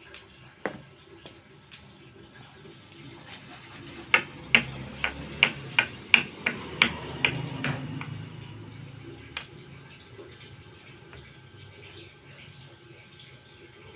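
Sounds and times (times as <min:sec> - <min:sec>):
low steady hum: 0:00.0 - 0:13.9
sharp taps or knocks: 0:04.1 - 0:08.5.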